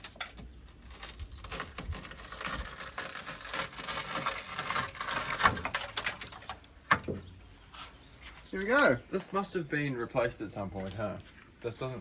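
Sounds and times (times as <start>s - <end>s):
broken glass crackling and scraping: 0.0s - 7.5s
glass fragments clicking: 1.0s - 6.7s.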